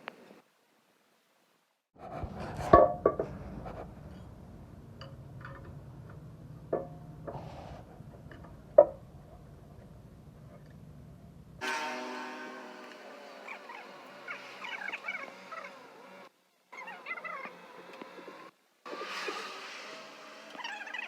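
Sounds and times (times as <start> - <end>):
low steady hum: 2.0 - 14.5.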